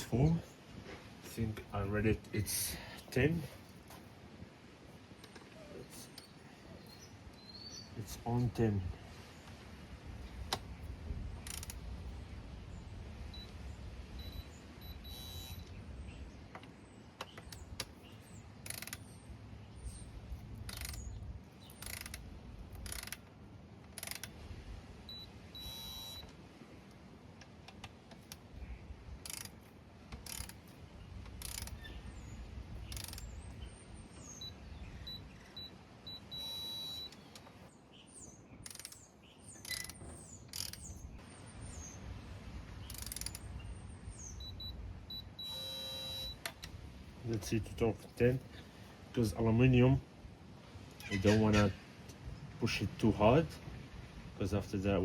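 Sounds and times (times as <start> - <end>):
torque wrench clicking: 11.4 - 11.8, 18.6 - 19.0, 20.7 - 21.1, 21.7 - 23.3, 23.9 - 24.3, 29.2 - 29.6, 30.2 - 30.6, 31.4 - 31.8, 32.9 - 33.3, 38.6 - 39.0, 39.6 - 40.9, 42.9 - 43.4
high beeps: 14.2 - 15.7, 25.1 - 26.2, 34.4 - 37.2, 44.4 - 46.4.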